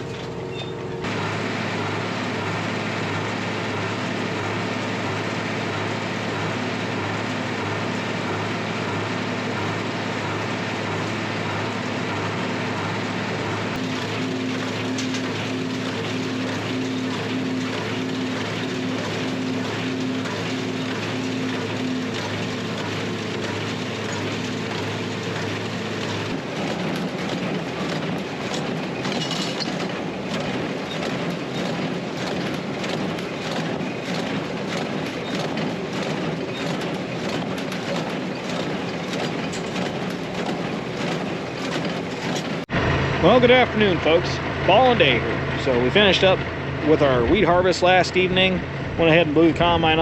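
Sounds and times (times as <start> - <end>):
clanking and rattling: 0.0 - 42.7
combine harvester engine: 0.0 - 50.0.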